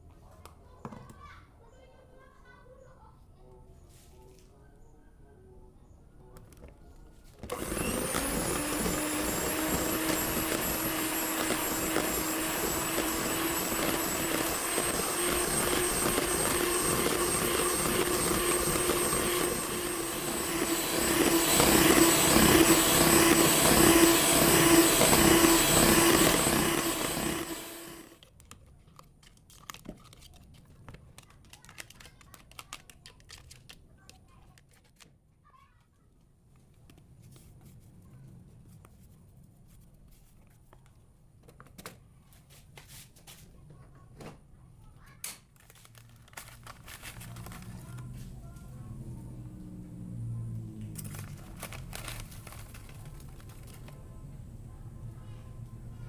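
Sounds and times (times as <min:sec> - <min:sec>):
electric motor whirring: 0:07.4 - 0:28.2.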